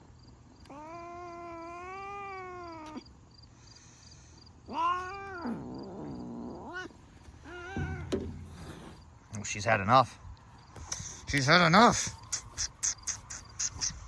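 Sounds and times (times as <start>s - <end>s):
cat yowling: 0.7s - 3.0s, 4.7s - 8.3s.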